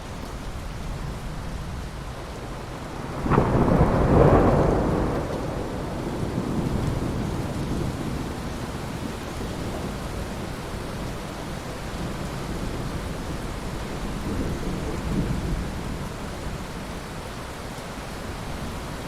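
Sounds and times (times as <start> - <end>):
steady rain: 0.0 - 19.0
rolling thunder: 2.9 - 10.4.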